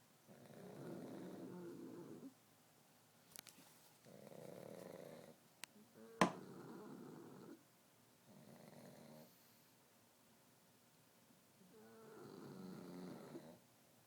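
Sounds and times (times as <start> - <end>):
dogs snoring: 0.3 - 2.4, 4.0 - 5.4, 6.0 - 7.6, 8.2 - 9.7, 11.7 - 13.6.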